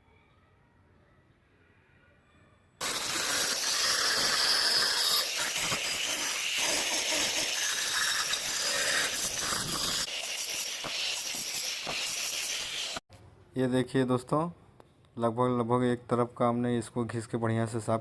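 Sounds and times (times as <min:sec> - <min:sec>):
grinder grinding rust off metal: 0:02.8 - 0:13.0.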